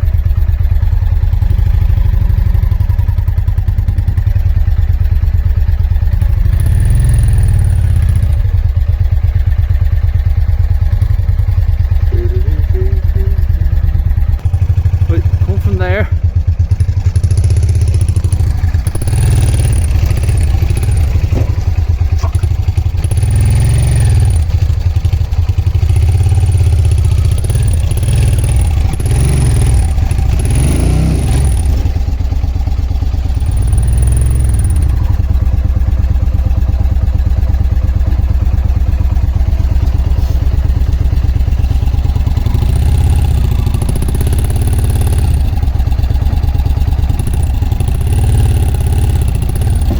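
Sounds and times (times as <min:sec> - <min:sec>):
motorcycle engine idling: 0:00.0 - 0:49.9
throttle blips: 0:11.8 - 0:15.7.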